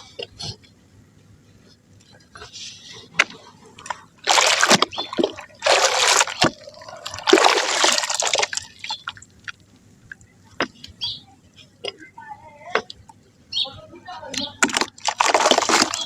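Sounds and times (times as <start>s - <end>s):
small drips and crackles: 3.8s - 11.0s, 14.7s - 16.0s
mud splashing into water: 4.2s - 9.5s, 14.6s - 16.0s.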